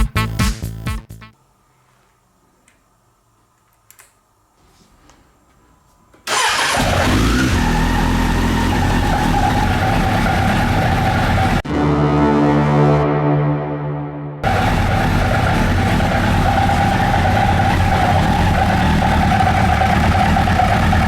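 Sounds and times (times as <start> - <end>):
motorcycle engine starting and running: 6.3 - 11.7, 14.4 - 21.0
steady whine: 9.6 - 21.0.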